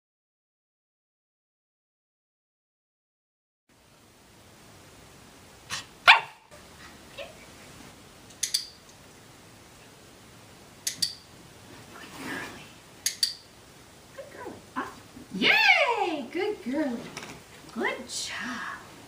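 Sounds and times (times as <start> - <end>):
puppy barking: 5.7 - 6.5.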